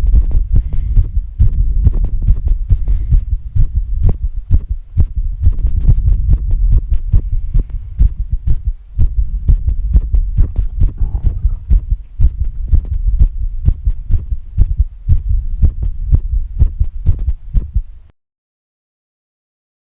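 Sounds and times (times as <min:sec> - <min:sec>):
fast heartbeat thumps: 0:00.0 - 0:18.0
faint heavy breathing: 0:00.5 - 0:01.3, 0:02.7 - 0:03.8, 0:06.9 - 0:08.4.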